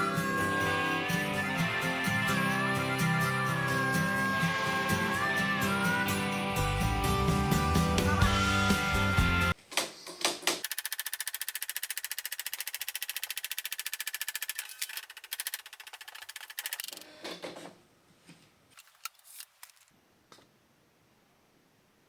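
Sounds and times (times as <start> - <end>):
scattered typewriter clicks: 10.2 - 17.1
typewriter keystrikes: 10.2 - 17.1.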